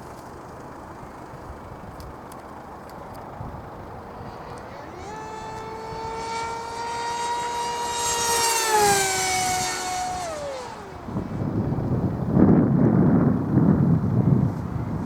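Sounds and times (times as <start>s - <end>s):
model jet motor whining: 0.0s - 13.2s
wind buffeting microphone: 3.1s - 15.0s.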